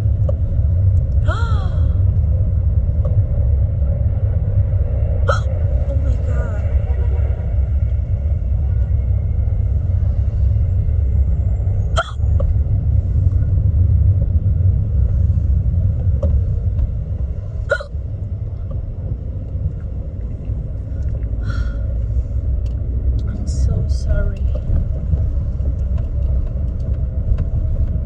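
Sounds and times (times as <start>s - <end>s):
road noise inside moving car: 0.0s - 28.0s
woman hiccuping: 5.3s - 5.5s, 12.0s - 12.2s, 17.7s - 17.9s.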